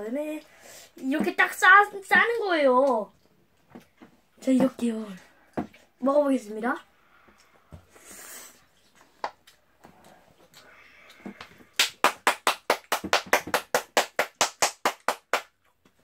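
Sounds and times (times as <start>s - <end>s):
rapid hand clapping: 11.4s - 15.6s.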